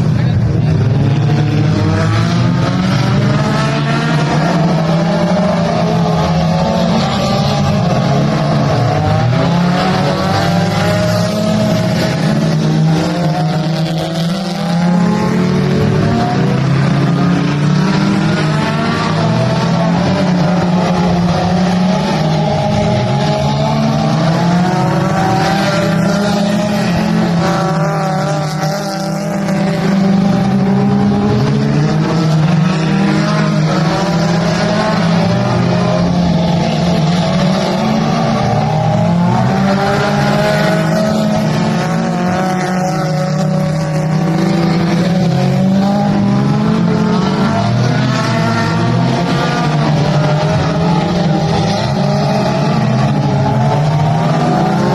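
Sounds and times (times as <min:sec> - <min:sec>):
race car engines revving: 0:00.0 - 0:54.9.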